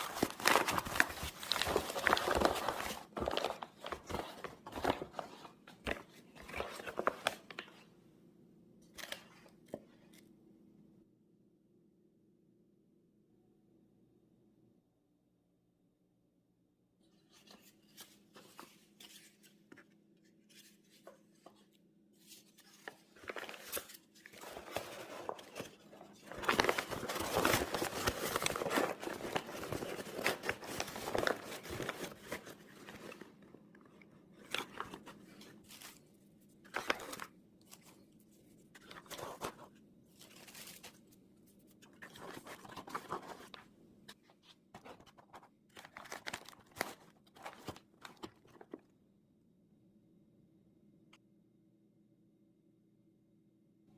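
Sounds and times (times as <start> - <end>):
hands rustling and scraping materials: 0.0 - 7.8, 22.2 - 47.7.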